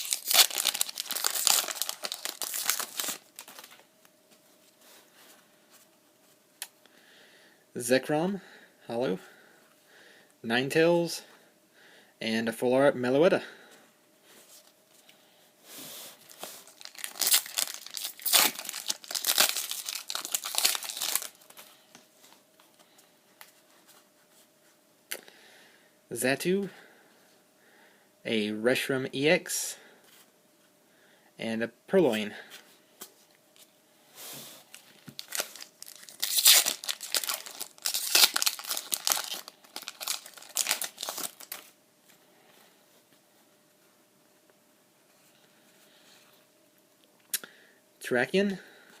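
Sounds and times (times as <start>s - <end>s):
foil wrapper tearing and crinkling: 0.0s - 3.8s, 16.3s - 21.4s, 34.7s - 41.7s.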